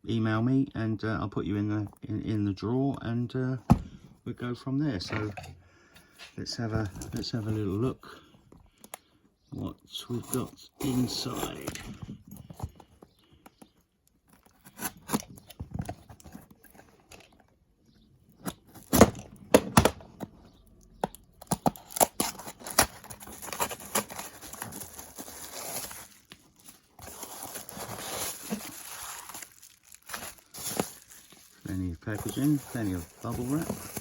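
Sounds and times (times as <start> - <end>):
packaging rustling and crinkling: 21.4 - 34.0
paper and tape ripping: 21.8 - 34.0.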